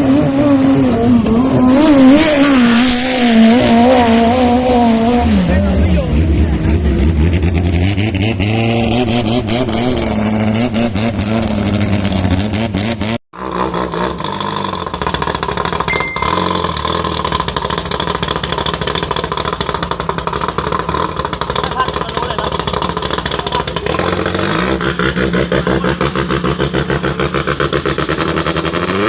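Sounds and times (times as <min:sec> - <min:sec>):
boat engine revving: 0:13.6 - 0:29.0.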